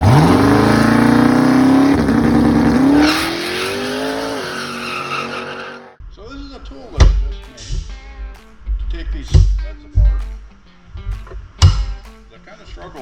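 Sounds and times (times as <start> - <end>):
car engine revving: 0.0 - 6.0
tyre squeal: 3.0 - 6.0.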